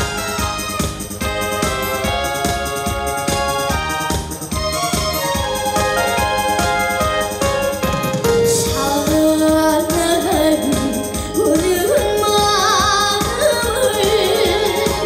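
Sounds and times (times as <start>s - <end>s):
backing track with drum beat: 0.0s - 15.0s
woman singing with vibrato: 8.5s - 15.0s.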